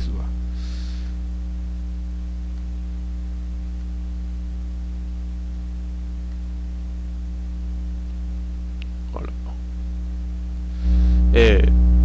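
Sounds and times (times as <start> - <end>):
electrical mains hum: 0.0 - 12.0.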